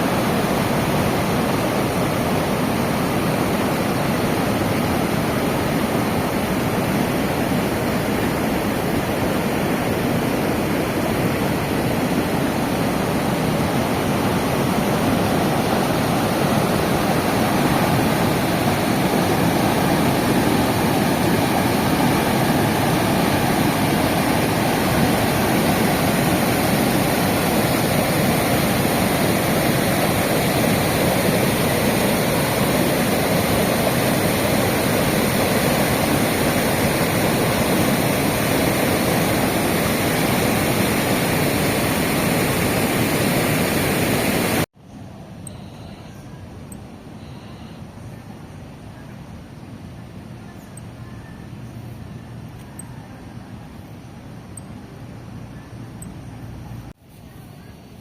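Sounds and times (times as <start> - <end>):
river water rushing: 0.0 - 44.7.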